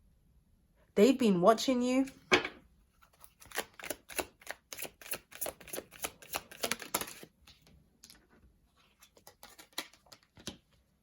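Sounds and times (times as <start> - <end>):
cards being shuffled: 3.0 - 8.2, 8.9 - 10.8.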